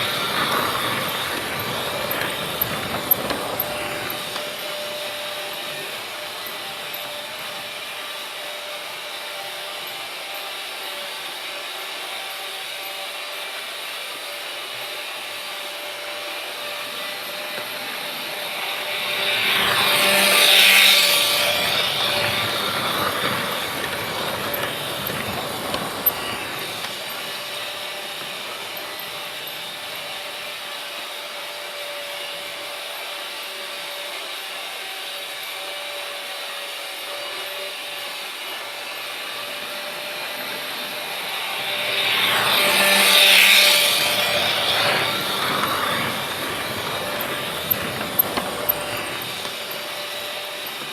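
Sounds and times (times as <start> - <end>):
freight train rumbling by: 0.0 - 8.0, 16.6 - 30.6, 39.2 - 50.9.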